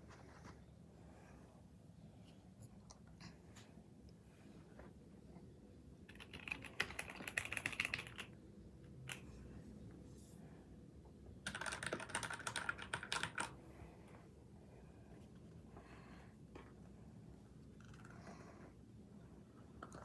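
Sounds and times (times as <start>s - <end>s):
mechanical keyboard typing: 6.1s - 8.4s, 11.4s - 13.6s.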